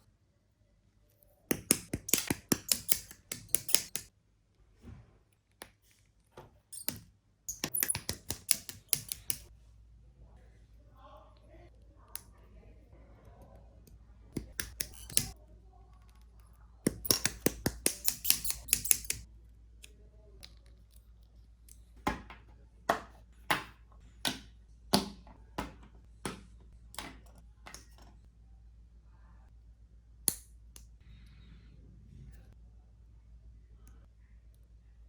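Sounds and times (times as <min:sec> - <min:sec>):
nippers snipping plastic: 0:01.5 - 0:04.1, 0:06.7 - 0:09.5, 0:14.3 - 0:15.4, 0:16.9 - 0:19.2
plastic parts snapping together: 0:01.5 - 0:04.1, 0:06.8 - 0:09.5, 0:14.4 - 0:15.4, 0:16.9 - 0:19.2.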